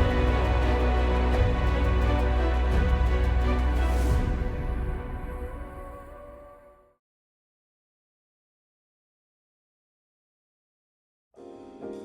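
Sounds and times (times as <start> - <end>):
background music with sustained chords: 0.0 - 6.6.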